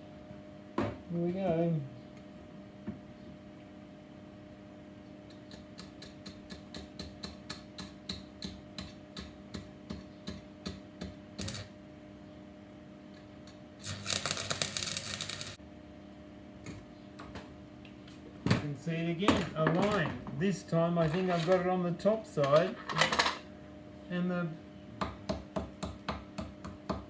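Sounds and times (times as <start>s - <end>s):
welding arc crackling burst: 11.4s - 11.7s, 13.8s - 15.6s
welding arc ticking: 11.4s - 11.7s, 13.8s - 15.6s.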